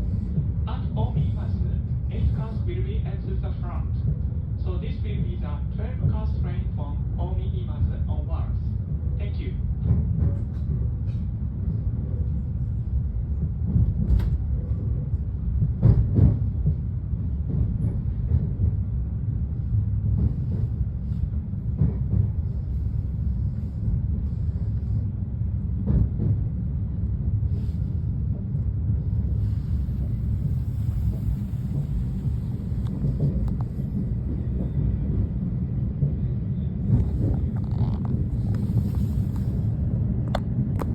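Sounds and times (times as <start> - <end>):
train rumble from on board: 0.0 - 40.9.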